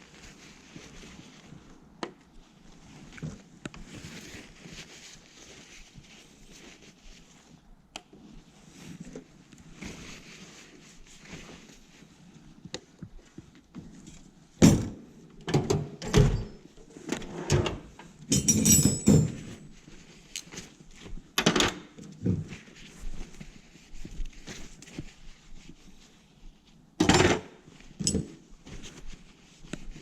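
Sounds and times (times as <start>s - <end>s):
metal tools knocking and clinking: 18.3s - 19.5s, 27.0s - 27.4s, 28.0s - 28.4s.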